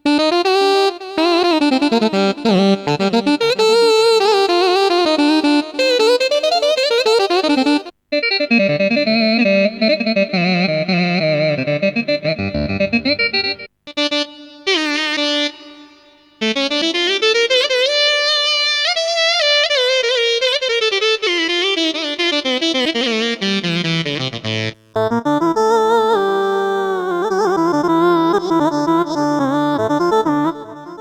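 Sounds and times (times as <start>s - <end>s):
keyboard playing ornamented melody: 7.2s - 14.7s.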